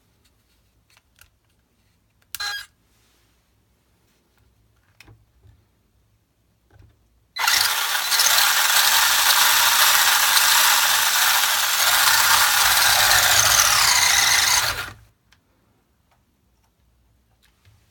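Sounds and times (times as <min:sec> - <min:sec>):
toy car electric motor whirring: 0:07.4 - 0:15.0.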